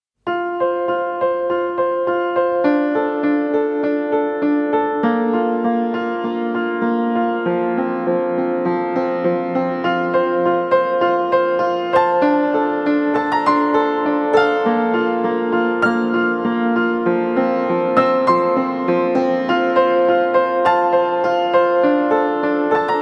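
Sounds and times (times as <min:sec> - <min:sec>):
gentle piano pattern: 0:00.3 - 0:23.0.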